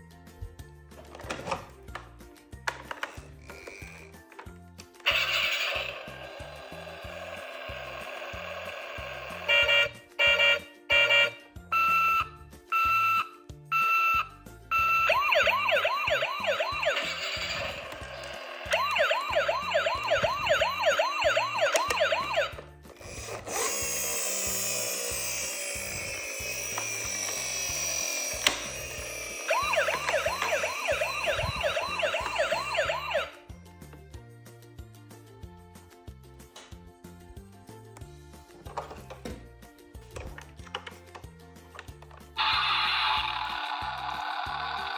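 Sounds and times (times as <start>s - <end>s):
toy siren warbling and wailing: 5.0s - 33.4s, 42.4s - 44.9s
short electronic beeps: 11.8s - 15.3s.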